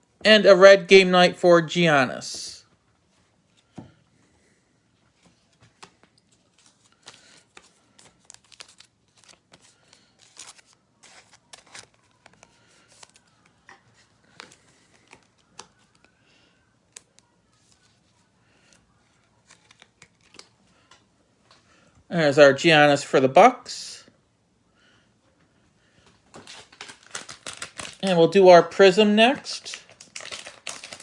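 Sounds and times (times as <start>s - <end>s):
crinkling of plastic card packaging: 5.4s - 16.2s, 16.8s - 21.0s, 26.3s - 31.0s.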